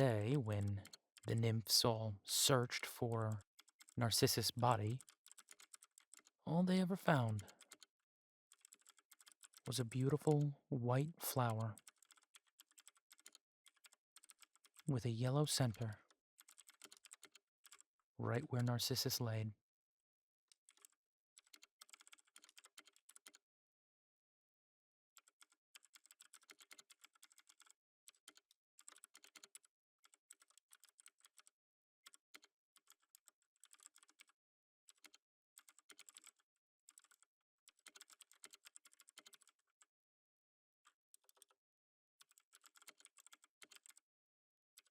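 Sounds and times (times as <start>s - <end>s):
typing on computer keyboard: 3.3s - 6.4s, 7.0s - 7.9s, 8.5s - 10.6s, 11.4s - 14.9s, 15.6s - 19.3s, 20.5s - 23.4s, 25.2s - 39.8s, 41.2s - 41.6s, 42.2s - 44.0s.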